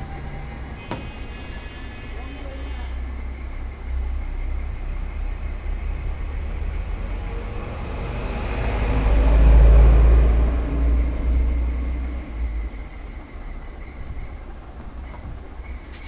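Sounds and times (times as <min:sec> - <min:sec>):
motor vehicle rumbling past: 0:03.4 - 0:13.0.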